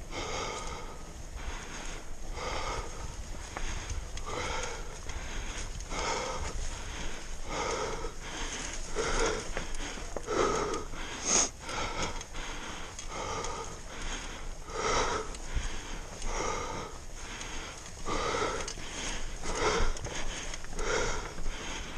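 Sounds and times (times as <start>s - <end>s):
heavy wheezy breathing: 0.0s - 21.9s
person sniffing: 11.2s - 11.6s.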